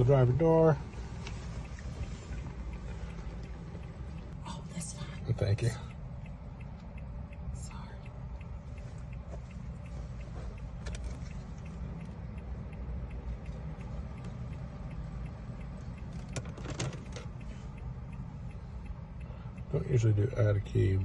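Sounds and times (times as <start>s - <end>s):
faint regular ticking: 0.0s - 21.0s
low steady rumble: 0.0s - 21.0s
car keys clicking and rattling: 8.8s - 15.0s, 15.6s - 18.1s.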